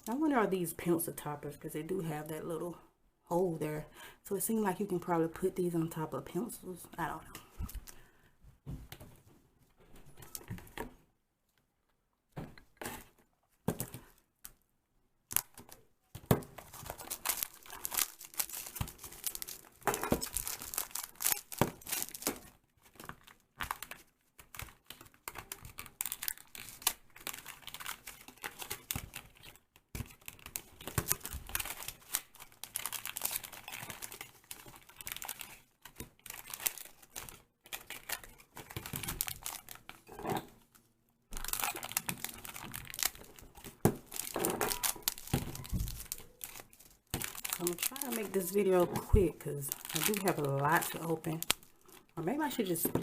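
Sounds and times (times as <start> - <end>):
plastic packaging tearing and crinkling: 16.5 - 40.1, 41.3 - 52.7.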